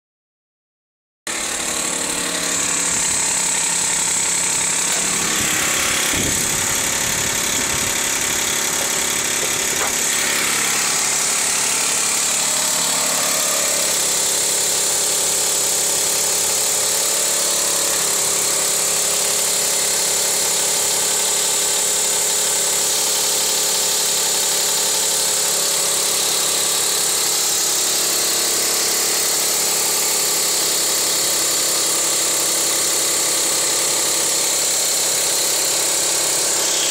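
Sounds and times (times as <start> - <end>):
engine belt clicking: 1.5 - 36.9
car engine idling: 1.9 - 12.1.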